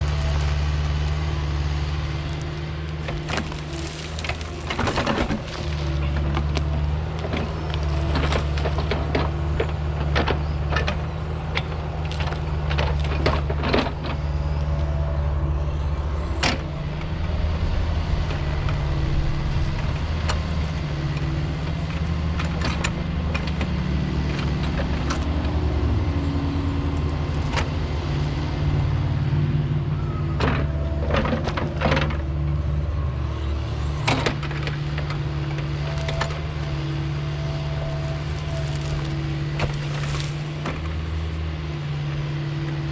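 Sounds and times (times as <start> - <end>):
heavy diesel engine under load: 0.0 - 42.9
sharp cracks and knocks: 2.0 - 14.0, 37.4 - 41.0.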